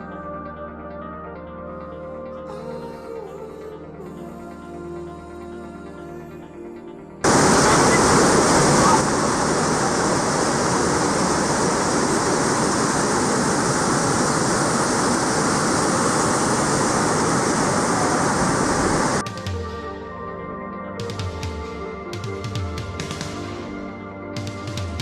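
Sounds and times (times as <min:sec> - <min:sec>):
rushing water roar: 0:07.2 - 0:19.2.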